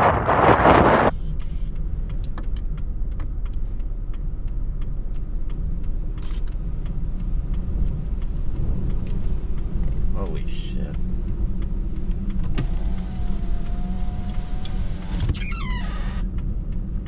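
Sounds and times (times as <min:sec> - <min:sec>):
loud rushing wind: 0:00.0 - 0:01.1
car low rumble: 0:00.0 - 0:17.0
faint ticks: 0:01.4 - 0:14.8.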